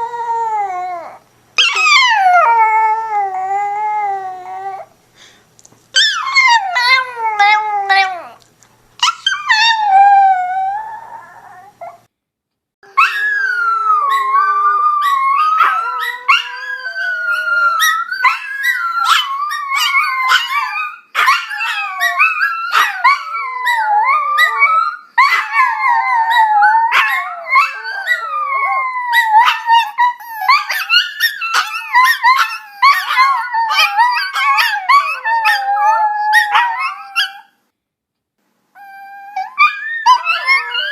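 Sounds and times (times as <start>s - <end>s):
dog howling: 6.0s - 8.4s, 12.8s - 37.5s, 38.8s - 40.9s.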